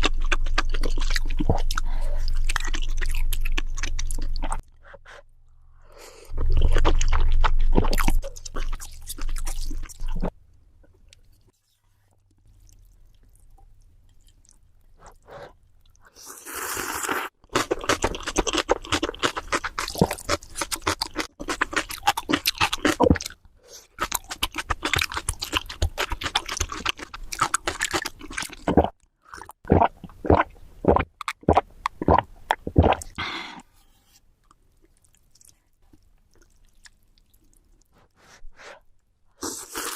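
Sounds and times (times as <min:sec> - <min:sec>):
food being chewed and crunched: 0:00.0 - 0:04.6, 0:06.3 - 0:10.4, 0:17.5 - 0:33.1, 0:34.4 - 0:38.0.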